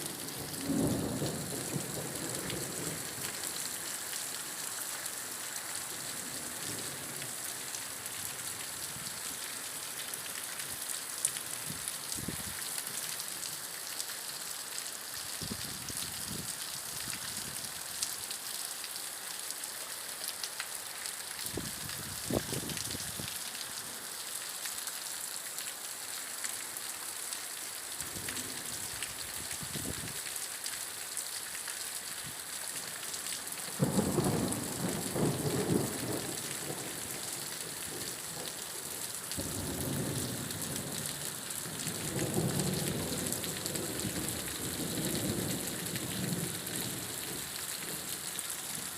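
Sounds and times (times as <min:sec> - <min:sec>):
steady rain: 0:00.0 - 0:48.9
low rolls of thunder: 0:00.4 - 0:03.1, 0:33.8 - 0:36.9.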